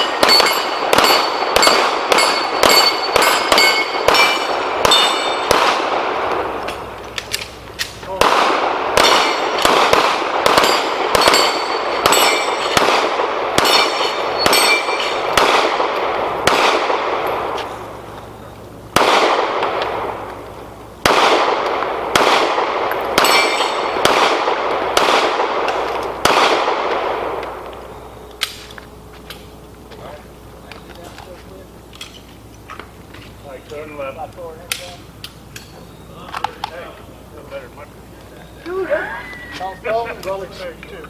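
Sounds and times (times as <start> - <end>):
steel targets ringing: 0.0 - 5.6, 9.0 - 9.7, 10.4 - 15.5, 23.2 - 24.0
pistol shots: 0.0 - 18.0, 18.9 - 20.4, 21.0 - 28.7.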